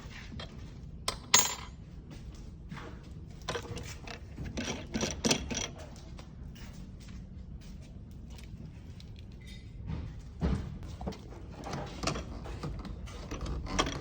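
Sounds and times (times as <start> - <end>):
metal tools clinking: 1.1 - 1.8.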